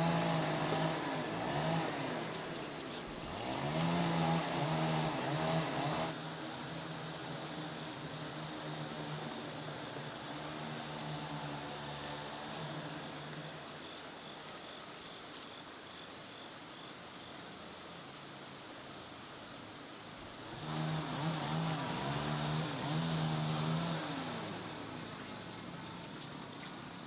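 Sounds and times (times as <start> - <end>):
vehicle engine revving: 0.0 - 14.2, 20.4 - 27.0.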